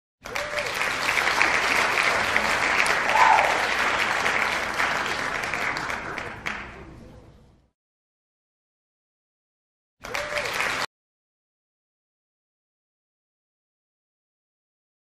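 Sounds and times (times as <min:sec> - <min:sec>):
audience applauding: 0:00.2 - 0:06.8, 0:10.0 - 0:10.9.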